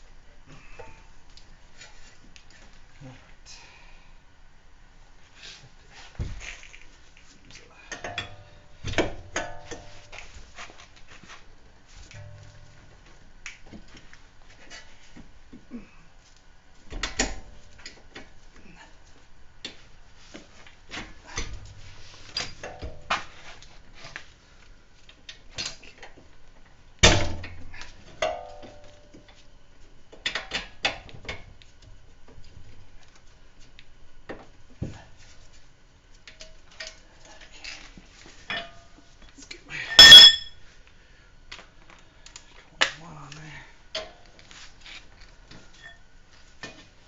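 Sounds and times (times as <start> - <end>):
metallic clinks of hand tools: 39.9 - 40.6.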